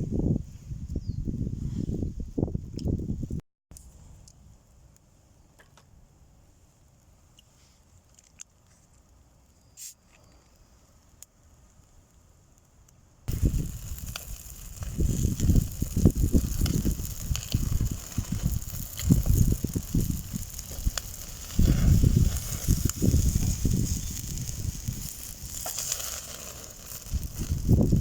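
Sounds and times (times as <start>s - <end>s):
wind buffeting microphone: 0.0s - 3.4s, 13.3s - 28.0s
charcoal fire crackling: 3.8s - 28.0s.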